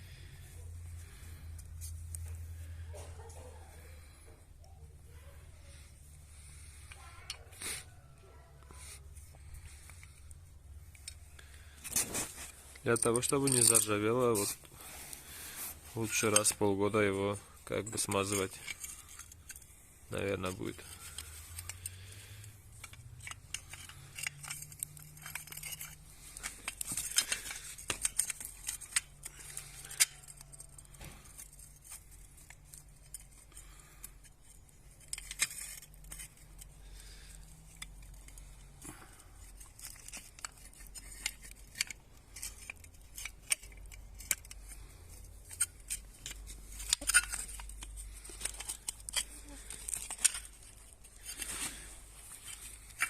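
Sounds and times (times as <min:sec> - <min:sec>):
small metallic clicks and clinks: 0:09.2 - 0:14.6, 0:16.0 - 0:53.0.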